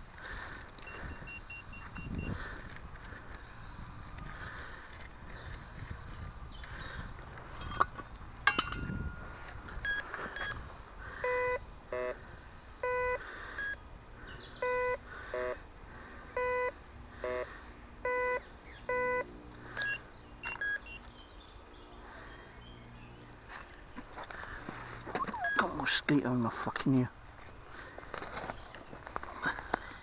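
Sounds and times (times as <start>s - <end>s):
metal detector two-tone beeps: 0.8s - 2.4s, 9.8s - 10.6s, 11.2s - 12.2s, 12.8s - 13.8s, 14.6s - 15.6s, 16.4s - 17.4s, 18.0s - 21.0s, 25.2s - 25.8s.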